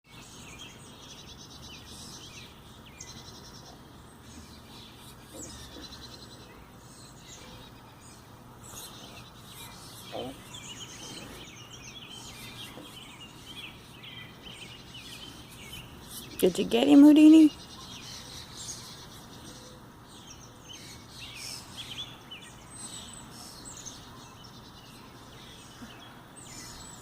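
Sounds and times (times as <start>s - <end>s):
birds chirping and trilling: 0.1s - 27.0s.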